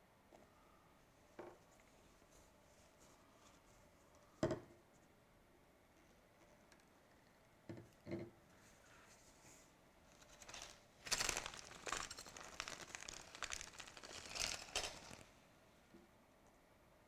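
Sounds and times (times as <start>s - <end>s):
plastic crinkling: 10.1s - 15.4s.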